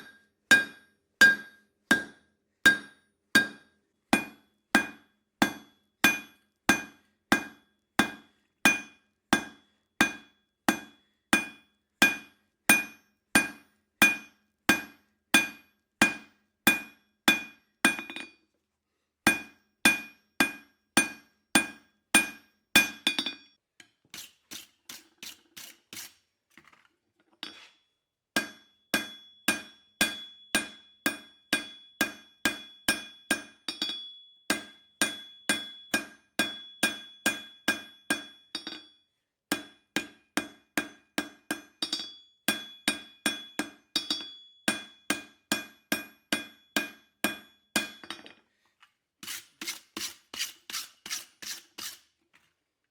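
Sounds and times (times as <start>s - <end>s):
hammer striking steel on anvil: 0.0s - 3.6s, 4.2s - 18.3s, 19.3s - 23.5s, 28.4s - 38.9s, 39.5s - 48.3s.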